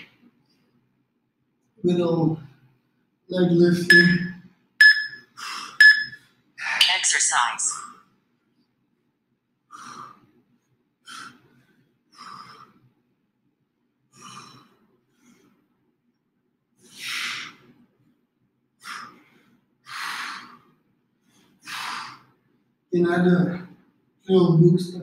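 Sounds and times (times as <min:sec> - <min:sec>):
person breathing hard: 0:05.4 - 0:05.8, 0:09.7 - 0:10.4, 0:11.0 - 0:12.9, 0:14.1 - 0:15.7, 0:16.8 - 0:17.7, 0:18.8 - 0:22.4.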